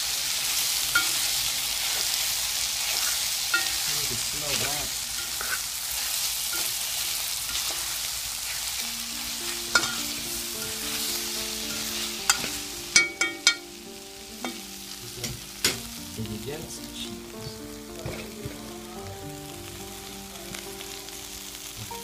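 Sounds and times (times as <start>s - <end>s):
sausage and onions sizzling: 0.0s - 22.0s
simple tune of held notes: 8.8s - 22.0s.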